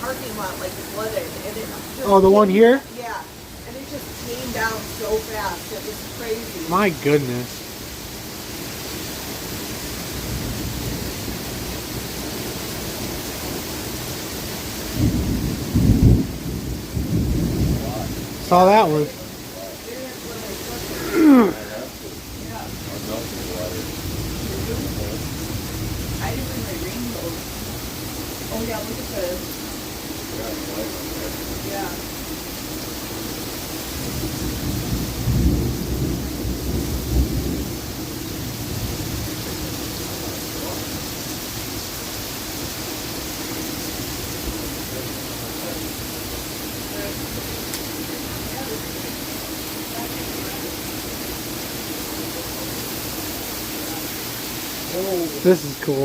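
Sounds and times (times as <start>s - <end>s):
low thunder rumble: 0.0s - 55.4s
heavy rain pouring: 0.0s - 56.0s.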